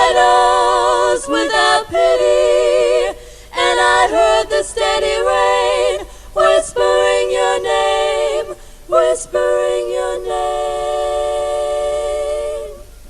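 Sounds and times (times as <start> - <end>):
women singing a cappella: 0.0 - 13.0.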